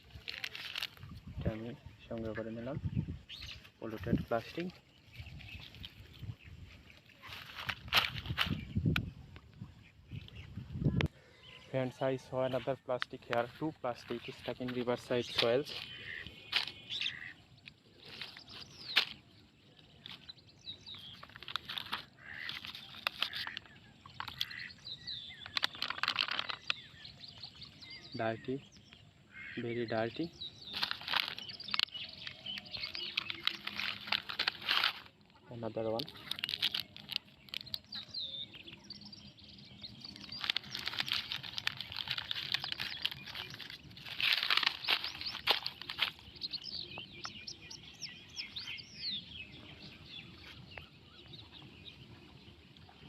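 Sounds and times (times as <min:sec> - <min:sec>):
birds chirping: 0:00.0 - 0:53.0
sharp clicks and rustles: 0:20.9 - 0:24.6, 0:25.4 - 0:26.8, 0:30.7 - 0:35.4, 0:36.0 - 0:38.1, 0:39.9 - 0:47.4
plastic litter crackling: 0:30.7 - 0:31.8, 0:32.4 - 0:35.2, 0:35.9 - 0:38.0, 0:40.0 - 0:46.8.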